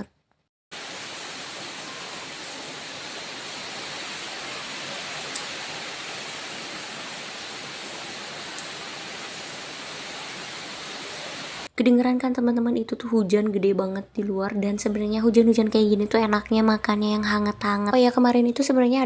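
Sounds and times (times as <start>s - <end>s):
heavy rain pouring: 0.7s - 11.7s.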